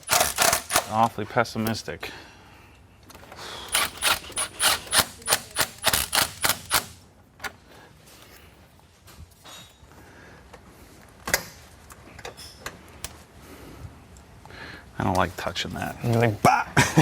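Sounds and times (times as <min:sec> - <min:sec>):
ratchet wrench clicking: 0:00.0 - 0:01.0, 0:03.7 - 0:07.0.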